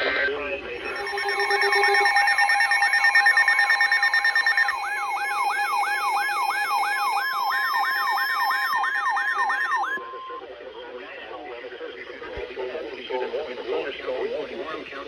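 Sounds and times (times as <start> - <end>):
siren tone sweeping up and down: 0.8 - 10.0
steady alert tones: 0.8 - 10.0.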